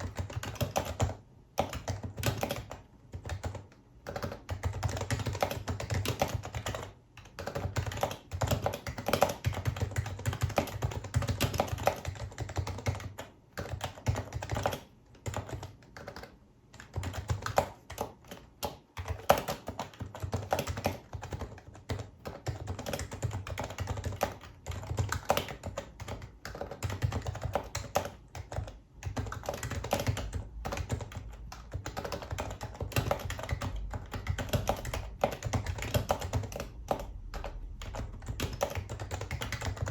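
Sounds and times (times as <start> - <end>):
soft keyboard typing: 0.0 - 39.9.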